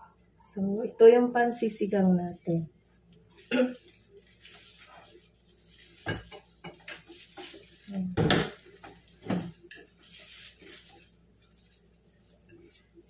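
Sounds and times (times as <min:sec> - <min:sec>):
dishes and utensils clinking: 0:06.0 - 0:07.6.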